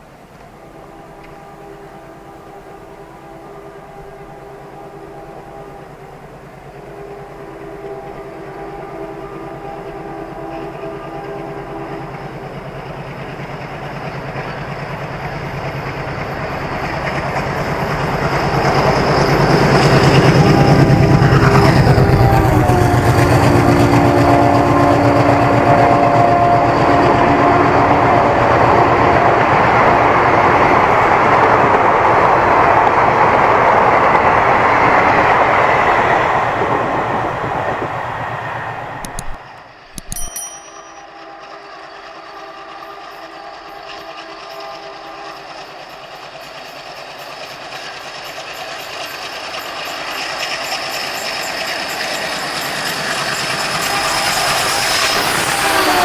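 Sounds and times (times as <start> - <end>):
quieter train with steady tone: 0.0 - 56.0
locomotive horn: 0.4 - 12.4, 18.8 - 29.4, 53.8 - 56.0
train wheels clattering on rails: 38.8 - 56.0.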